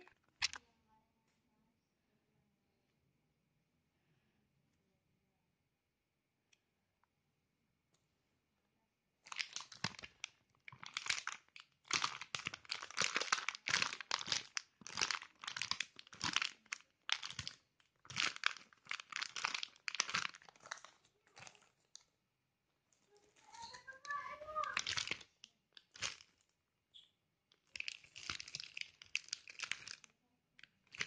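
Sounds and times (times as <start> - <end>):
plastic packaging crinkling: 9.2 - 22.1, 22.9 - 26.6, 27.5 - 31.0.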